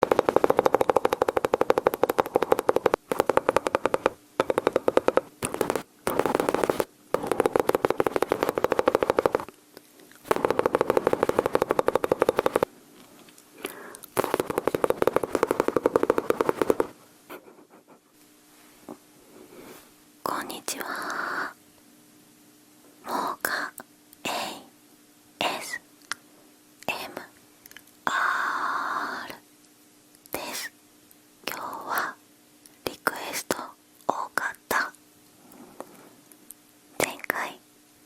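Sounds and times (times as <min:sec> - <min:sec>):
mouth imitating machine-gun fire: 0:00.0 - 0:09.4, 0:10.3 - 0:12.7, 0:14.2 - 0:16.9.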